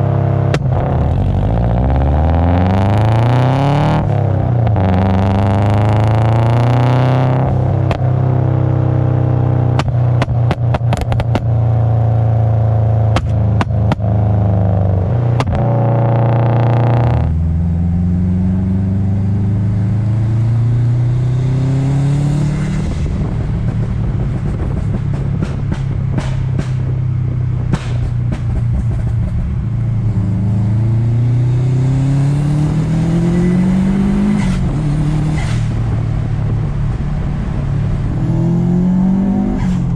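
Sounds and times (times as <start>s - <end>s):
car engine revving hard: 0.0s - 8.0s, 13.2s - 23.4s, 30.2s - 36.0s
exhaust pops and cracks: 9.7s - 11.6s, 13.1s - 14.1s, 23.4s - 27.0s, 27.6s - 29.6s.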